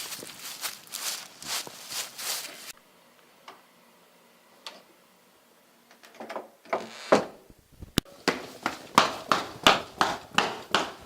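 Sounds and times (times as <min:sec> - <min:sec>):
rustling: 0:00.0 - 0:02.8
knocks: 0:08.3 - 0:11.0.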